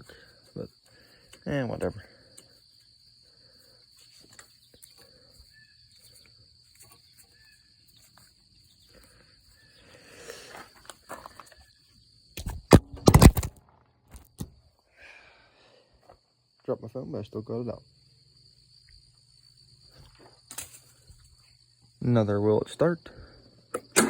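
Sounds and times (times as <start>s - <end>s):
crickets trilling: 0.0s - 24.0s
rustling and handling noise: 3.9s - 9.5s
phone dropped clatter: 12.4s - 14.5s.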